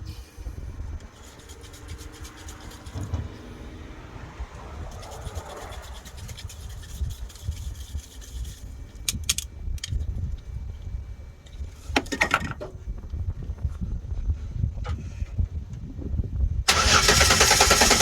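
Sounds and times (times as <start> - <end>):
low rumble: 0.0 - 11.9
rubbing and scraping handling noises: 1.0 - 3.4, 4.8 - 9.4.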